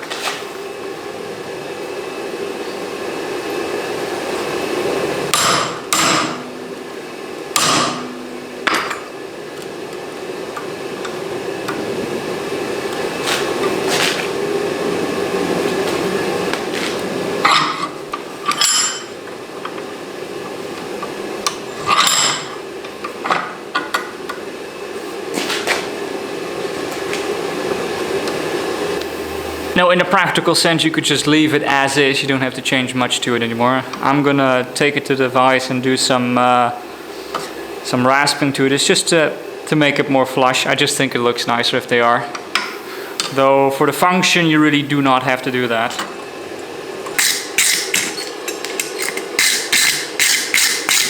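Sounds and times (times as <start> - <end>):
steady background hum: 0.0 - 51.0
hammer ringing on metal: 7.6 - 8.8.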